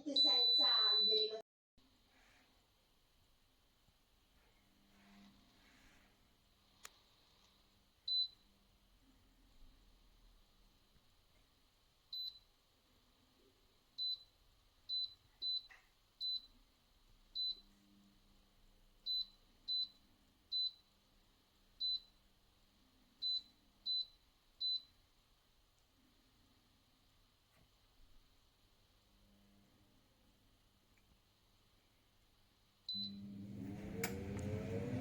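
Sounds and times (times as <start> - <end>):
keypad beeps: 0.1 - 1.4.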